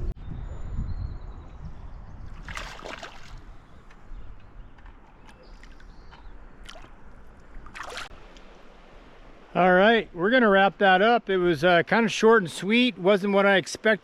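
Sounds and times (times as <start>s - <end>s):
water splashes: 2.4s - 3.6s, 4.8s - 9.6s
water lapping around kayak: 2.4s - 9.5s.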